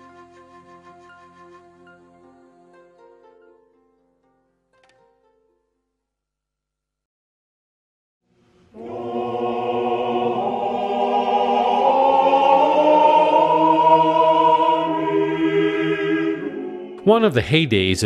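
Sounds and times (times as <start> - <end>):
choir singing held chords: 8.7 - 18.0.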